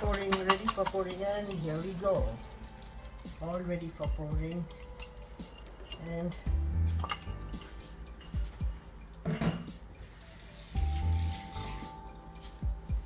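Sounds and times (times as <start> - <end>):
background music: 0.0 - 13.0
liquid pouring into a pan: 10.0 - 11.8.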